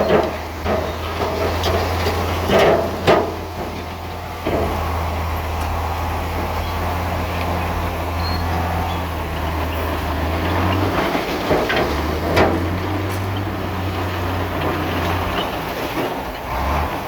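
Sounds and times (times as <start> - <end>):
sharp metallic knocks: 0.0 - 5.8
bulldozer diesel engine drone: 0.0 - 17.0.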